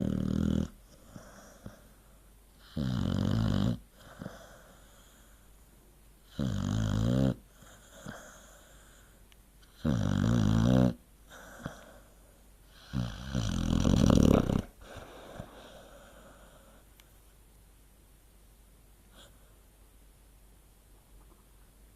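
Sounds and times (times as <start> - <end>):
dog snoring: 0.0 - 2.0, 2.6 - 5.3, 6.2 - 9.0, 9.6 - 12.1, 12.7 - 16.7.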